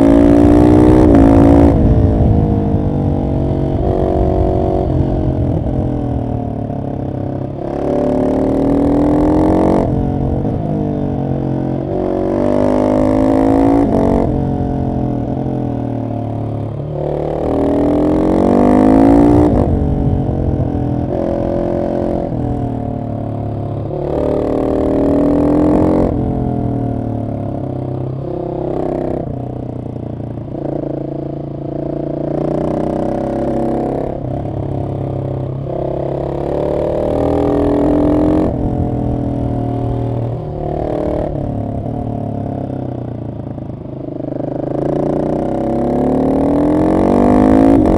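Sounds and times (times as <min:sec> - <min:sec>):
motorcycle engine revving: 0:00.0 - 0:47.9.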